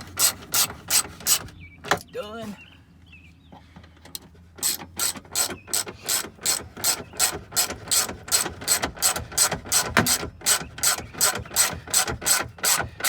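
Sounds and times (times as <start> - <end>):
hand ratchet clicking: 4.6 - 13.0.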